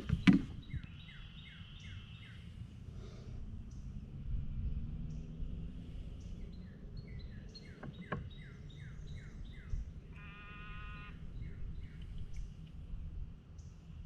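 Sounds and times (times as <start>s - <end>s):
birds chirping: 0.0s - 4.0s, 5.0s - 12.7s
wind: 0.0s - 14.0s
bird buzzy call: 10.1s - 11.2s.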